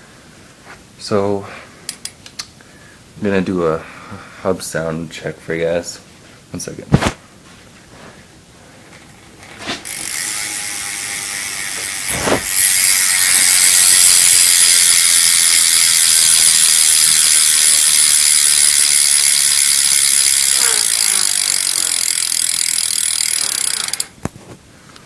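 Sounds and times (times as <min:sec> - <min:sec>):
bicycle hub ratcheting buzz: 0:09.1 - 0:24.2.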